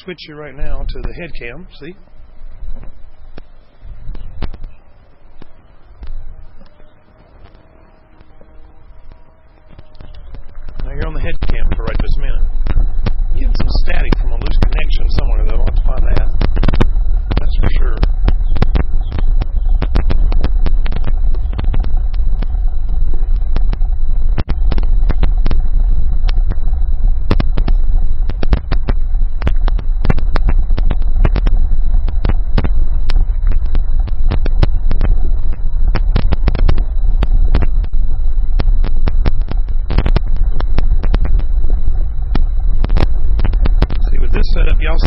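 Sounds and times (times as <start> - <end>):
crackling static clicks and pops: 0.0 - 45.0
heavy low rumble: 0.0 - 45.0
thin high whine: 0.0 - 45.0.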